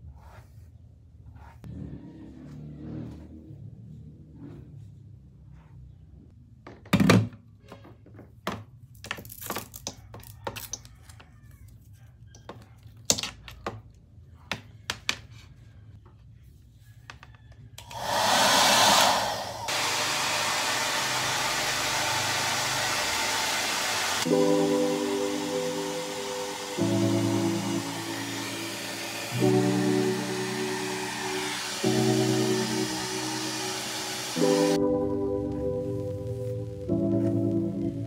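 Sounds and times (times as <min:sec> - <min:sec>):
blower appliance rushing: 0:17.8 - 0:34.8.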